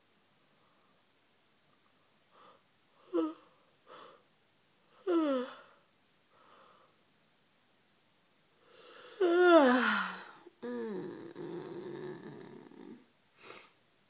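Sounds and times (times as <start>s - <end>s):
soft breaths: 0.4s - 7.1s, 8.5s - 13.8s
woman yawning: 9.2s - 12.0s.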